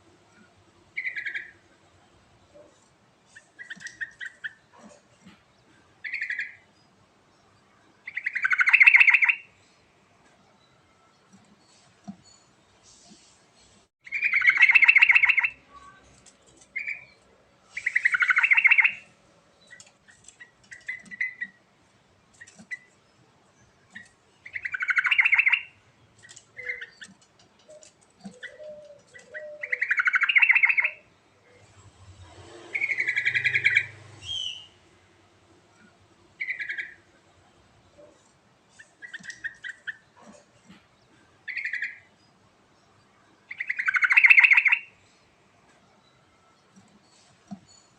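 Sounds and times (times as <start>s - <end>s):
bird singing gurgling phrases: 0.9s - 1.7s, 6.0s - 6.9s, 7.8s - 9.5s, 14.0s - 16.1s, 16.7s - 21.6s, 23.6s - 31.7s, 32.7s - 34.8s, 35.7s - 38.0s, 41.1s - 44.9s.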